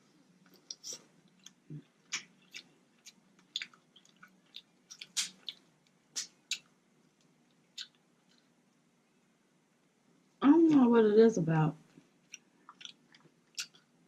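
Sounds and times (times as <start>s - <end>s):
close chewing with wet mouth clicks: 0.5s - 6.7s, 7.5s - 8.5s, 12.2s - 14.0s.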